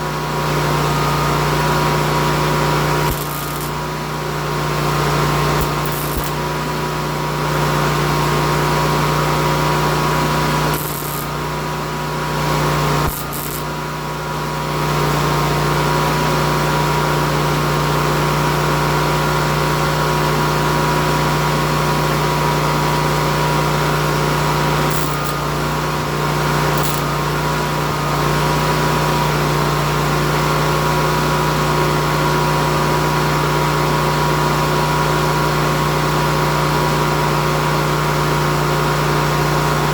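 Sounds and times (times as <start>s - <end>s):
power tool motor running: 0.3s - 17.3s, 23.9s - 31.3s.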